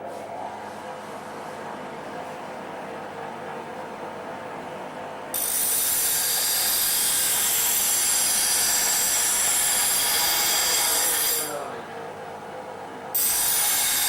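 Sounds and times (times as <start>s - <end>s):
bench grinder humming: 5.4s - 11.6s, 13.2s - 14.0s
high grinding on grinding wheel: 5.4s - 11.7s, 13.2s - 14.0s.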